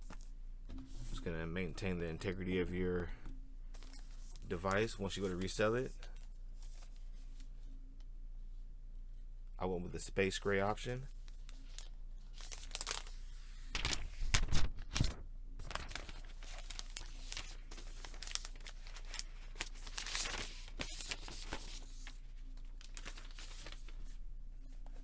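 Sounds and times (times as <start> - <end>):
plastic wrapping tearing and crinkling: 11.3 - 24.1.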